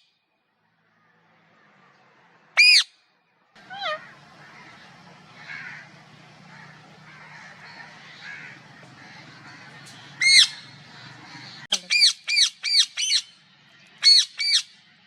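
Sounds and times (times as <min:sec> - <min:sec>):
parrot squawking: 0:02.6 - 0:02.9, 0:03.6 - 0:13.4, 0:14.0 - 0:14.8.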